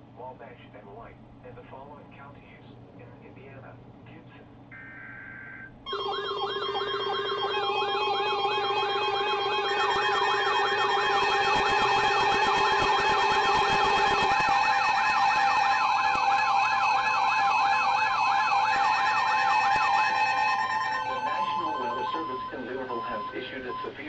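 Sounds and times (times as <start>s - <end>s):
siren-like warble: 4.8s - 24.0s
lower steady tone: 5.9s - 24.0s.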